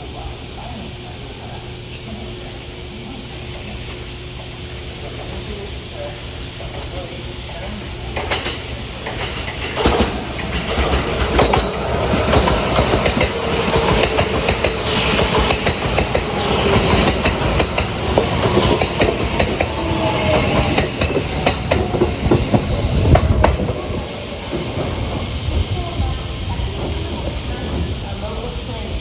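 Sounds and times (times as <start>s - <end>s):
train running noise: 0.0s - 29.0s
train wheels clicking over rail joints: 7.9s - 29.0s.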